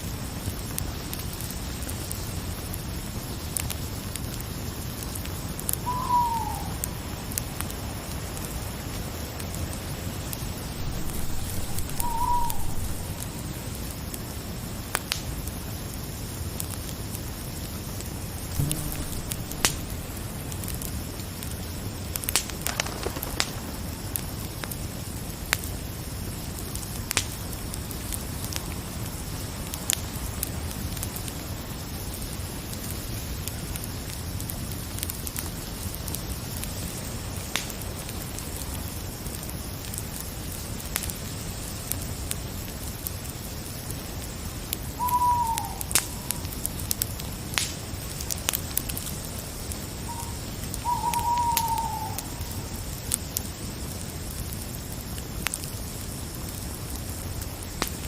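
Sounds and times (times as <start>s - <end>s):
fire crackling: 0.0s - 58.0s
short falling call: 18.6s - 20.1s.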